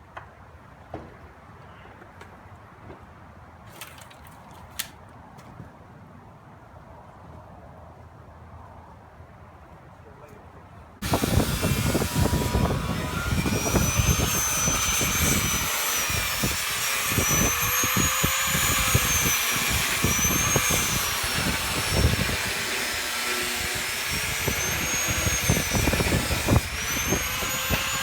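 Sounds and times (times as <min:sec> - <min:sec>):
wind buffeting microphone: 0:11.0 - 0:28.0.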